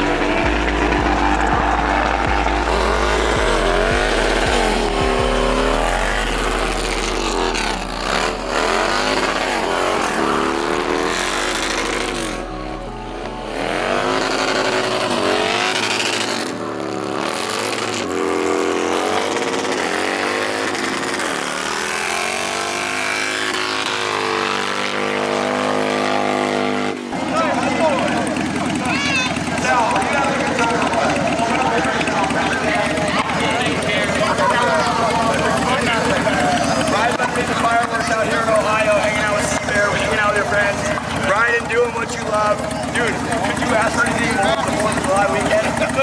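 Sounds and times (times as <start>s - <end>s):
engine revving: 0.0s - 46.0s.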